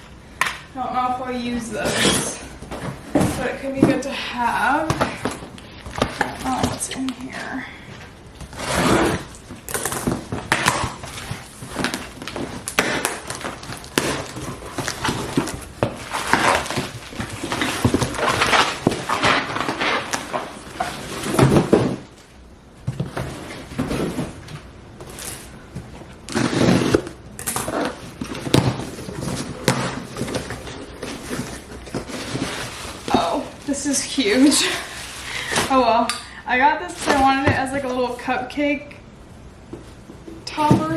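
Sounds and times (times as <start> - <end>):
packaging rustling and tearing: 8.4 - 22.3, 23.0 - 35.8.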